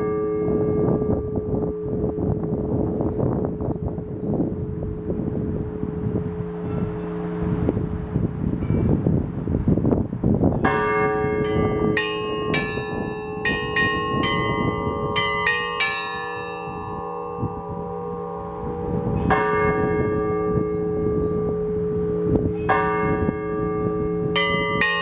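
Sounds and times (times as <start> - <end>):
church bells ringing: 0.0 - 7.7, 10.6 - 25.0
wind rumbling on microphone: 0.0 - 25.0
small high bells struck: 11.4 - 19.6, 24.4 - 25.0.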